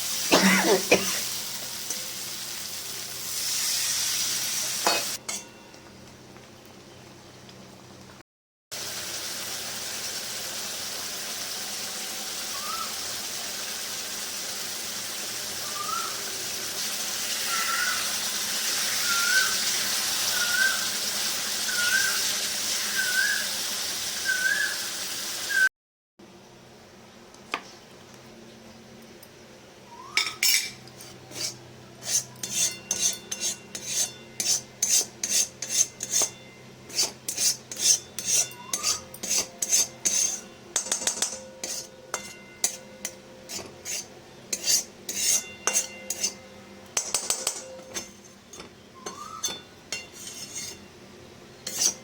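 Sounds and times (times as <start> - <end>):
fish curry sizzling in a pan: 0.0 - 5.2, 8.8 - 25.6.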